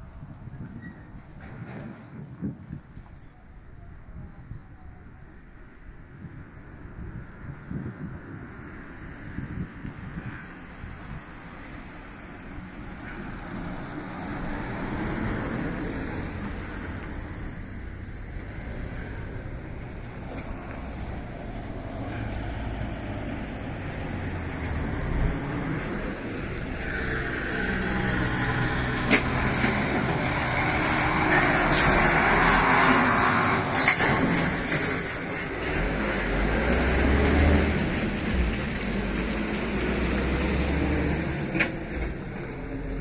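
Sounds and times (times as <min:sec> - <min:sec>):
wheels on rail: 0:09.8 - 0:43.0
railcar diesel engine: 0:10.2 - 0:43.0.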